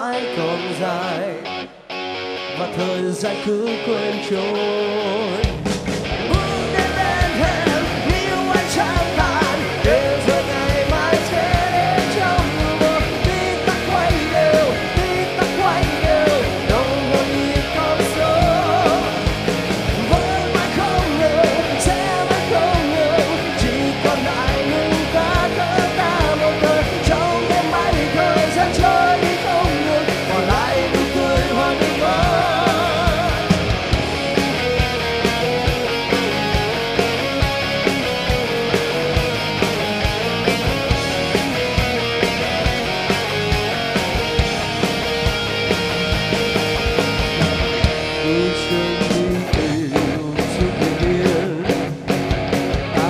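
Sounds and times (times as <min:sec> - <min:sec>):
person singing: 0:00.0 - 0:01.6, 0:02.6 - 0:05.6, 0:06.3 - 0:19.2, 0:20.0 - 0:33.6, 0:48.1 - 0:52.0
rock band playing loudly: 0:00.0 - 0:53.0.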